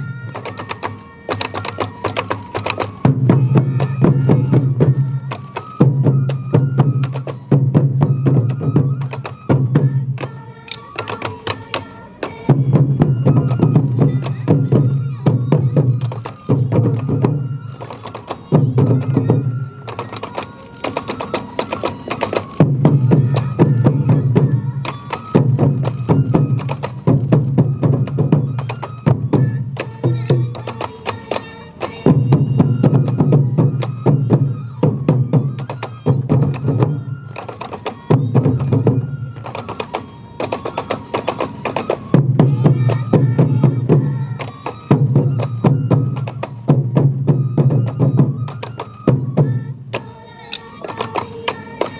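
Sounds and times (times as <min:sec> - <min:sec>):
taiko drums beating: 0:00.0 - 0:50.2
flute-like melody: 0:00.0 - 0:51.9.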